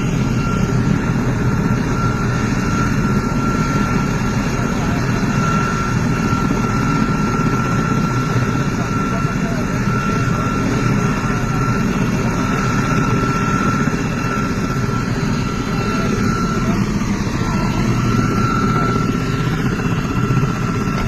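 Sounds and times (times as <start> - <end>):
helicopter rotor and engine: 0.0 - 21.0.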